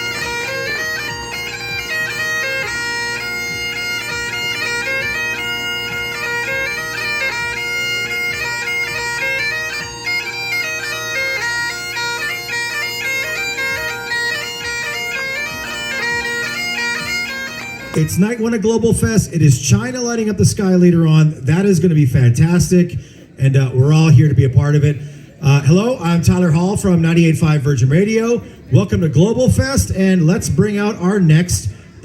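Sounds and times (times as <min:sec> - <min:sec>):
bagpipes playing a brisk tune: 0:00.0 - 0:23.4.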